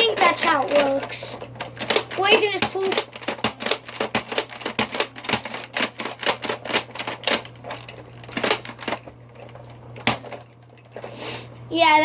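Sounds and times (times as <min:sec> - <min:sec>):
toy launcher pump clicking: 0:00.0 - 0:11.1
puff of air: 0:11.0 - 0:11.6.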